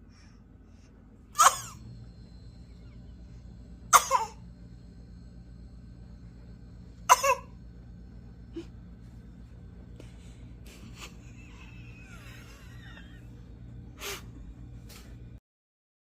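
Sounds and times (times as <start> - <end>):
baby fake coughing: 1.4 - 1.8, 3.9 - 4.4, 7.1 - 7.6.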